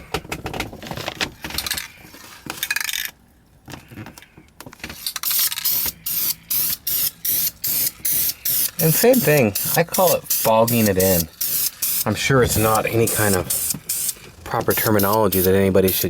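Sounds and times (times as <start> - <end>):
spray can ball rattling: 5.2 - 16.0
spray paint hissing bursts: 5.3 - 16.0.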